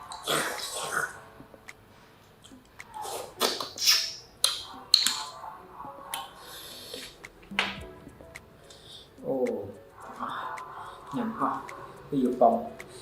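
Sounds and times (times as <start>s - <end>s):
slurping: 2.8s - 5.4s.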